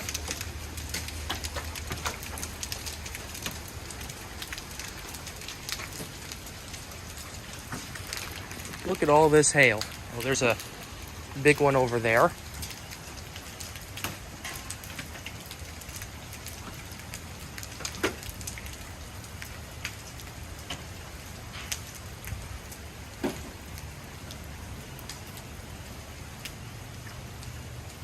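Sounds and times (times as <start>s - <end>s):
hailstones striking the ground: 0.0s - 26.6s
steady rain: 0.0s - 28.0s.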